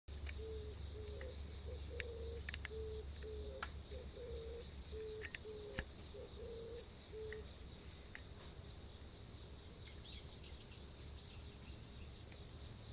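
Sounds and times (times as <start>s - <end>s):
insects trilling: 0.1s - 12.9s
dove cooing: 0.3s - 7.5s.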